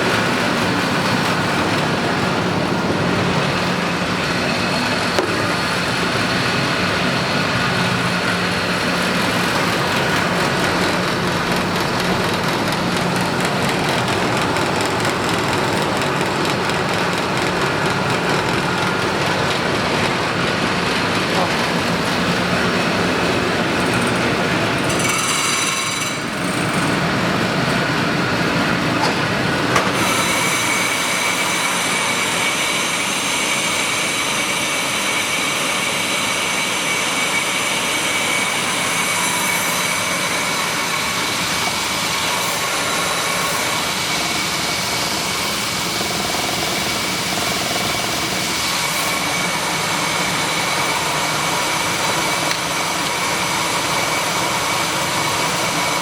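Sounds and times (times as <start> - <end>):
grinding machine running: 0.0 - 56.0
high machine whine: 0.0 - 56.0
knock: 5.2 - 5.5.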